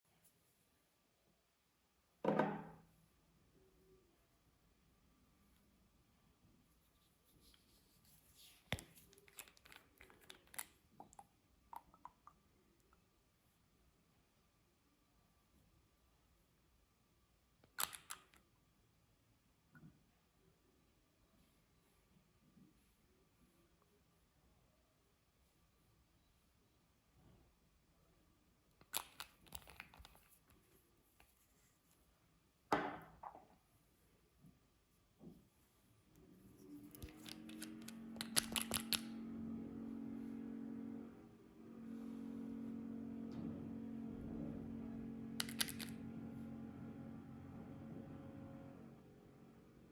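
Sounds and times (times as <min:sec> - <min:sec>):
small clicks and crackles: 0:08.6 - 0:11.3.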